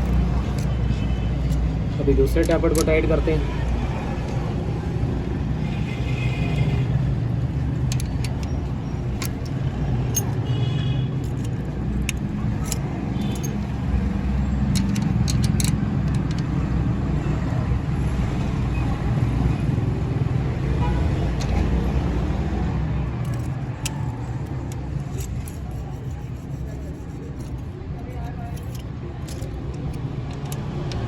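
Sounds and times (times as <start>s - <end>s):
low rumble of motor traffic: 0.0s - 31.0s
metallic clicks of hand tools: 2.4s - 3.2s, 7.8s - 10.5s, 11.2s - 16.5s, 23.2s - 31.0s.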